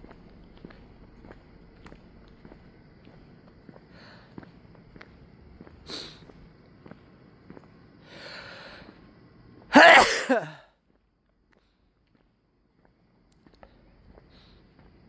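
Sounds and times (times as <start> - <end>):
faint footsteps: 0.0 - 8.0, 10.8 - 15.0
sharp sniff: 5.9 - 6.3
man sneezing: 9.7 - 10.6.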